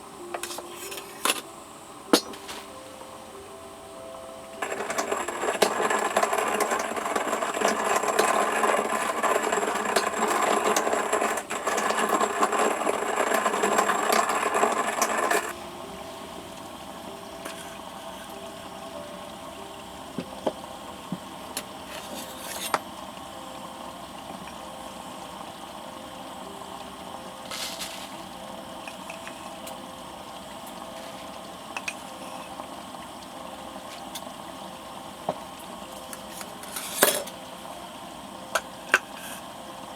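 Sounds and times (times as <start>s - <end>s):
soft background music: 0.0s - 39.9s
hand coffee mill grinding: 4.6s - 15.5s, 21.9s - 22.8s, 27.4s - 28.3s, 36.1s - 37.3s.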